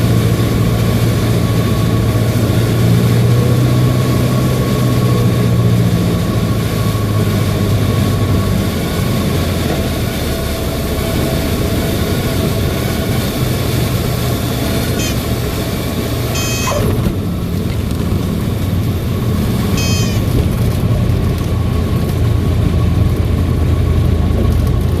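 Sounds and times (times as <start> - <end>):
airplane engine humming: 0.0 - 25.0
short high chirps: 15.0 - 15.3, 16.3 - 16.9, 19.7 - 20.3.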